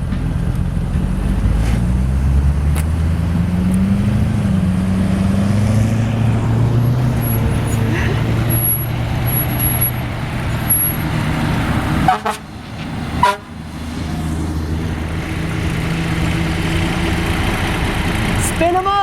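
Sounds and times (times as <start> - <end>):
car engines driving off: 0.0 - 19.0
car horn toots: 12.0 - 12.5, 13.2 - 13.6.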